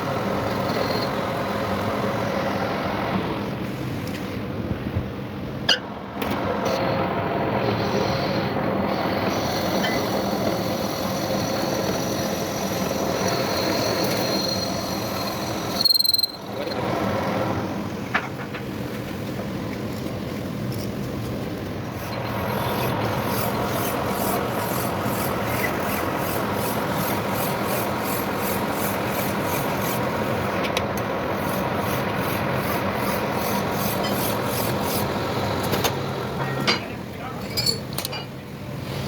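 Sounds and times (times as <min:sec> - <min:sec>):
filing metal pin by hand: 0:09.3 - 0:16.8, 0:22.0 - 0:30.1, 0:31.4 - 0:35.2.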